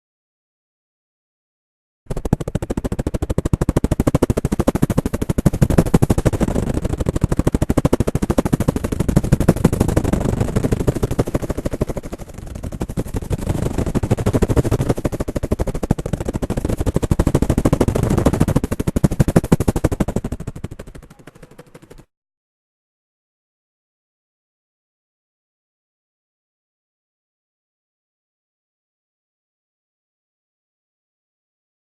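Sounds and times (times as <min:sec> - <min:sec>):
person imitating a helicopter: 0:02.1 - 0:22.1.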